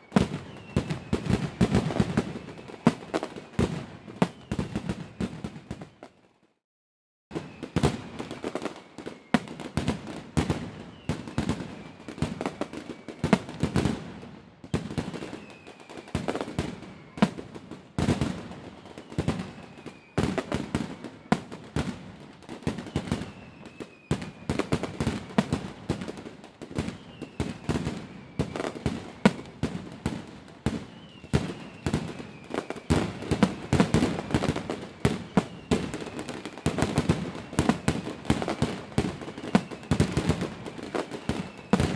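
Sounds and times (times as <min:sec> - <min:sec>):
faint falling whistle: 0:00.0 - 0:03.4, 0:04.2 - 0:06.1, 0:10.6 - 0:13.7, 0:14.6 - 0:17.4, 0:18.3 - 0:21.6, 0:22.6 - 0:25.6, 0:26.8 - 0:29.7, 0:30.7 - 0:41.9
fireworks bangs and crackles: 0:00.0 - 0:06.4, 0:07.3 - 0:41.9.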